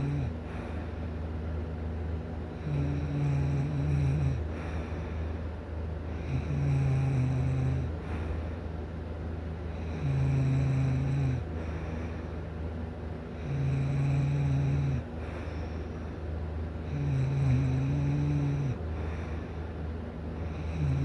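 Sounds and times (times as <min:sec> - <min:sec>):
person snoring: 0:00.0 - 0:00.4, 0:02.6 - 0:04.8, 0:06.2 - 0:07.9, 0:09.8 - 0:11.5, 0:13.4 - 0:15.0, 0:16.8 - 0:19.2, 0:20.5 - 0:21.0.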